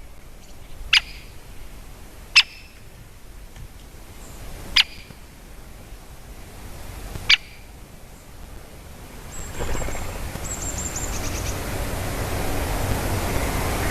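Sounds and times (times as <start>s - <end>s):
woodpecker kik call: 2.4s - 2.8s, 9.2s - 11.6s
small bird twittering: 9.2s - 11.6s.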